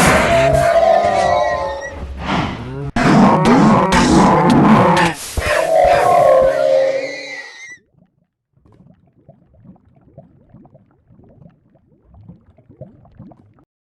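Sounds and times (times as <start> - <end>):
stomach growling: 2.5 - 13.7.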